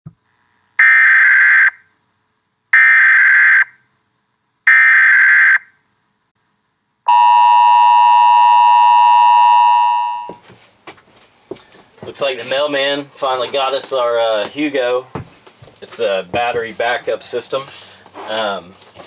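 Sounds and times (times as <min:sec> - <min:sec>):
electronic buzzer: 0:07.1 - 0:10.4.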